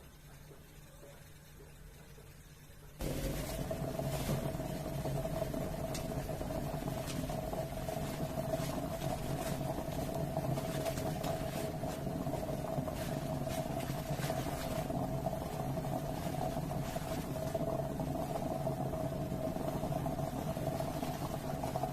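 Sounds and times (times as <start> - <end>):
coffee maker humming: 3.0 - 21.9
faint crackles: 3.0 - 21.9.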